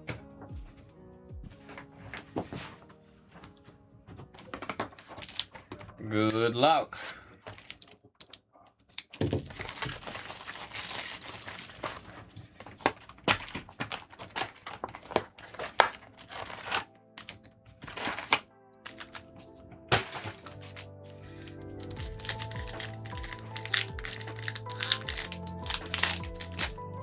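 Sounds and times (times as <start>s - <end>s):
quiet background music: 0.0s - 27.0s
plastic and foil packaging crinkling: 4.4s - 6.4s, 7.5s - 8.4s, 9.0s - 26.8s.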